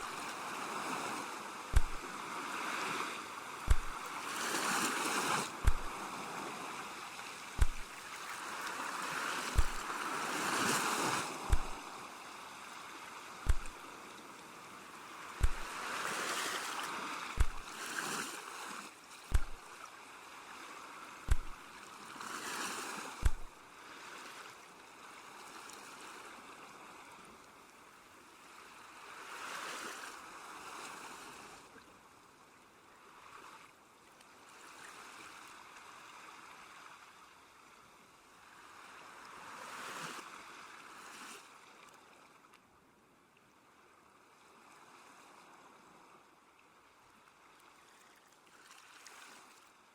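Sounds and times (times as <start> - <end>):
sea waves washing: 0.0 - 19.7, 20.8 - 23.6
deep thumps: 1.8 - 2.0, 3.7 - 4.0, 5.6 - 5.9, 7.6 - 7.9, 9.6 - 9.8, 11.5 - 11.8, 13.5 - 13.8, 15.4 - 15.7, 17.4 - 17.7, 19.3 - 19.6, 21.3 - 21.6, 23.2 - 23.5.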